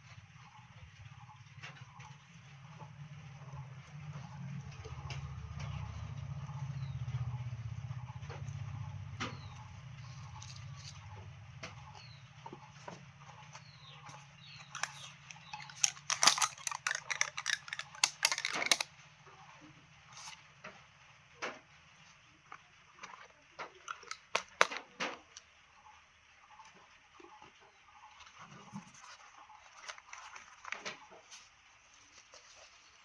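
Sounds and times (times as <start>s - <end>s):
sharp clicks and crackling rustles: 12.8s - 19.4s, 22.4s - 25.6s, 28.2s - 33.0s.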